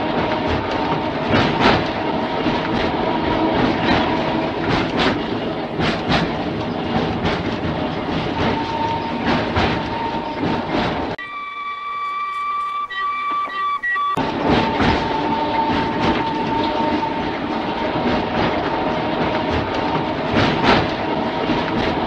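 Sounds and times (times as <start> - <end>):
continuous rumble: 0.0 - 11.2, 14.1 - 22.0
railway car wheels clicking on rails: 0.0 - 22.0
steady whine: 11.2 - 20.1.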